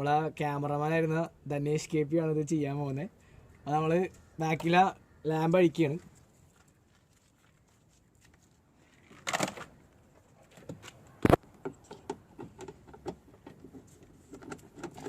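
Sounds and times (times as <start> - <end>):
rustle of handling parts: 5.9 - 15.0.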